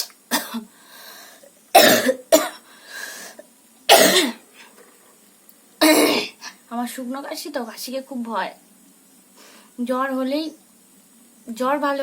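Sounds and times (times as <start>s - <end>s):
woman coughing: 0.3s - 0.7s, 1.7s - 2.6s, 3.9s - 4.4s, 5.8s - 6.4s.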